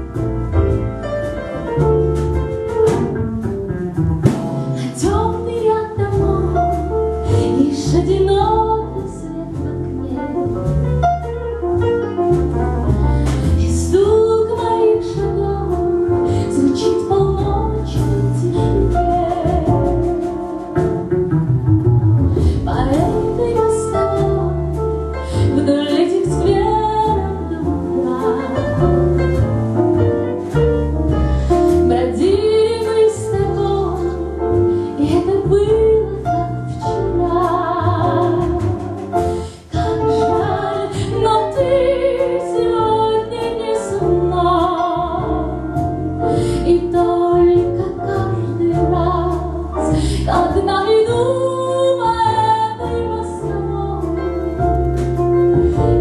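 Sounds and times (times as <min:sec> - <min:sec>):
bass piano and beat: 0:00.0 - 0:56.0
woman singing a pop song: 0:04.8 - 0:10.5, 0:13.6 - 0:20.6, 0:22.7 - 0:24.7, 0:25.3 - 0:28.9, 0:31.9 - 0:38.9, 0:39.5 - 0:54.4.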